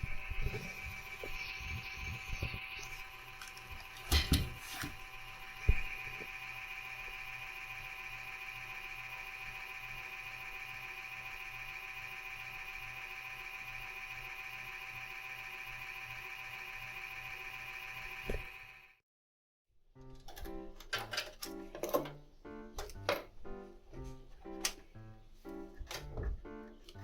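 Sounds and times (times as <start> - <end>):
computer fan whining: 0.0 - 19.0.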